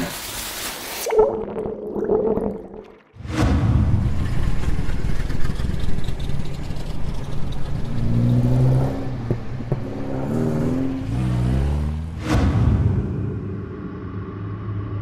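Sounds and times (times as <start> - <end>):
car engine revving: 4.0 - 12.4.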